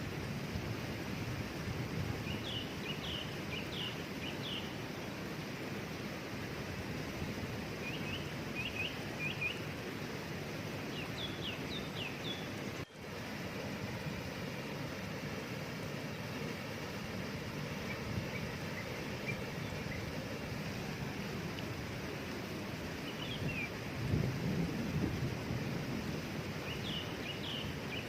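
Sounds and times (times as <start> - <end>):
waterfall rushing: 0.0 - 28.0
songbird chirping: 2.2 - 4.8, 7.8 - 9.8, 10.8 - 12.9, 17.3 - 21.7, 22.4 - 23.8, 26.5 - 28.0.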